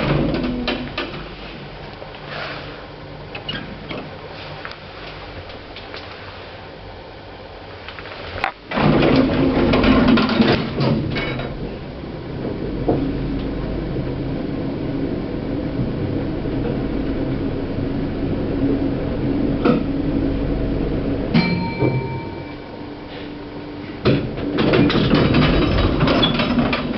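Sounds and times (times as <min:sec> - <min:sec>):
lift doors clattering and clunking: 0:00.0 - 0:01.4, 0:03.3 - 0:04.3, 0:08.7 - 0:18.9, 0:23.8 - 0:26.9
lift car humming: 0:00.0 - 0:26.9
steady ringing tone: 0:20.5 - 0:23.9.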